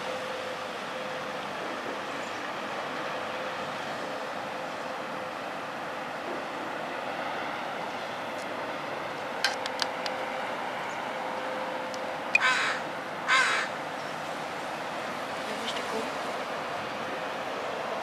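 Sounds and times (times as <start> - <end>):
outdoor background hum: 0.0 - 18.0
crow cawing: 12.4 - 13.8.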